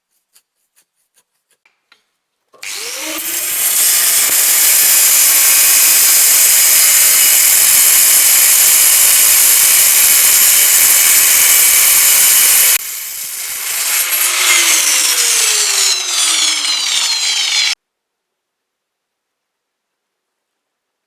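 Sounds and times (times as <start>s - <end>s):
power tool grinding metal: 2.6s - 17.8s.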